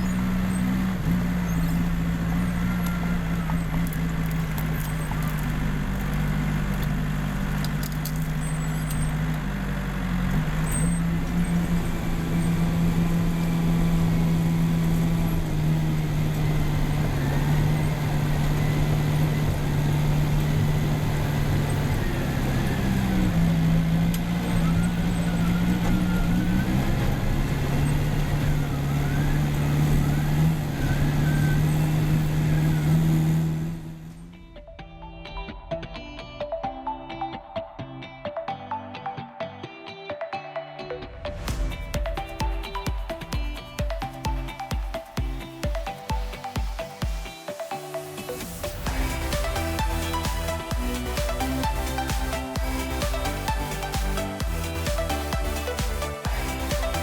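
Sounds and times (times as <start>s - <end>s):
faint wavering squeals: 0.0s - 7.3s, 8.2s - 23.4s, 24.0s - 33.4s
diesel engine under load: 0.0s - 34.4s, 48.3s - 57.0s.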